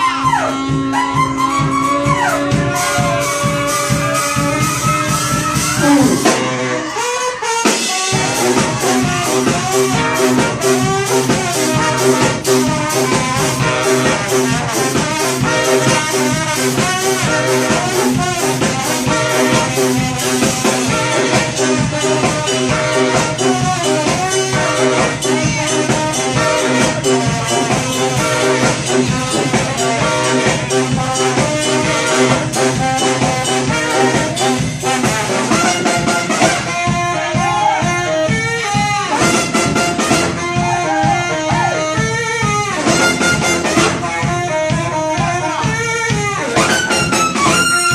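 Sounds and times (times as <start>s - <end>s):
brass band playing: 0.0s - 47.9s
steady drum beat: 0.0s - 47.9s.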